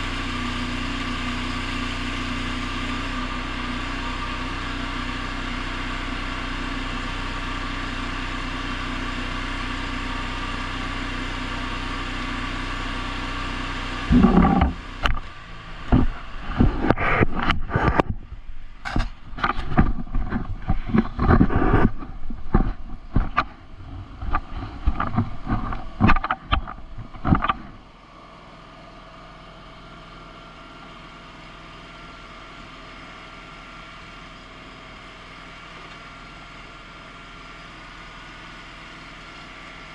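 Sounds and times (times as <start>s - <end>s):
small engine running: 0.0s - 39.9s.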